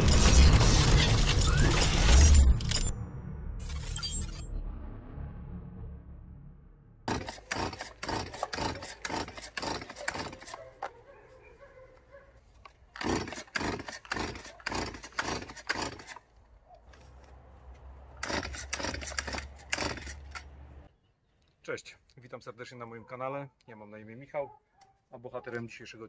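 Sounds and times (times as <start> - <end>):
chainsaw starter cord rasping: 7.1 - 11.0, 12.6 - 16.4, 18.1 - 20.6.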